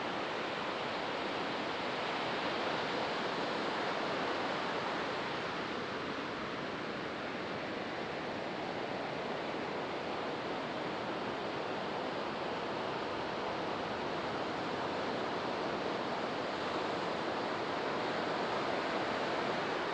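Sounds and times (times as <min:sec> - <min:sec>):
ocean surf washing on beach: 0:00.0 - 0:19.9.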